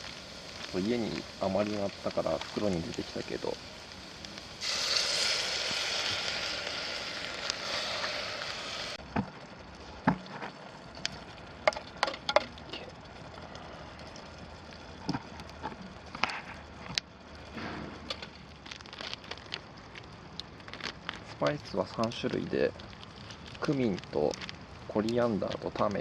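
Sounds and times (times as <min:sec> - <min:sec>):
tomatoes sizzling in hot pot: 0:00.0 - 0:26.0
sharp clicks and knocks: 0:10.0 - 0:12.6.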